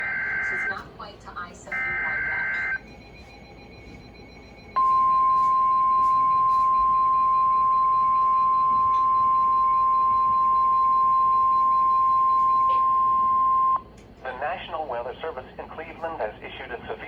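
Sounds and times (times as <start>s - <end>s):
steady high alarm beep: 0.0s - 0.9s, 1.7s - 13.8s.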